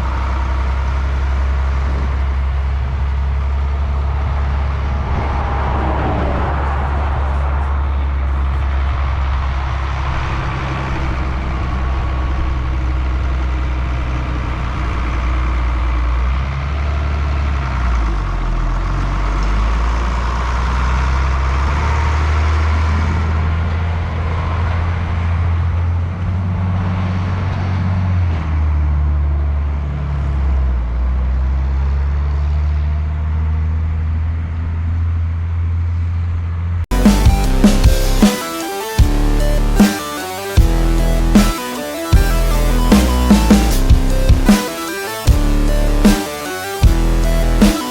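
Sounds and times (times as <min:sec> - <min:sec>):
farm machinery engine running: 0:00.0 - 0:05.4, 0:06.8 - 0:24.8, 0:38.9 - 0:46.2.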